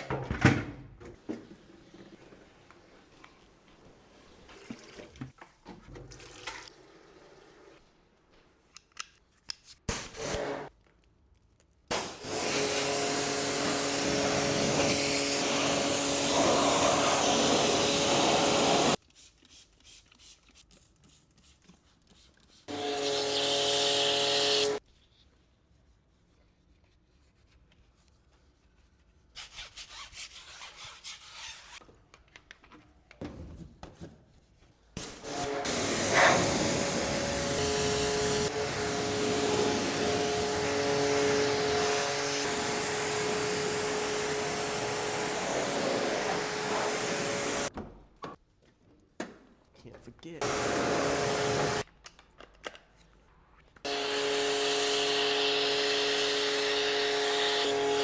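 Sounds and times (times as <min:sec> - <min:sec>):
cleaning machine hissing: 0:11.9 - 0:19.0, 0:22.7 - 0:24.8, 0:35.0 - 0:47.7, 0:50.4 - 0:51.8, 0:53.9 - 0:58.0
rubbing and scrubbing: 0:24.9 - 0:31.8.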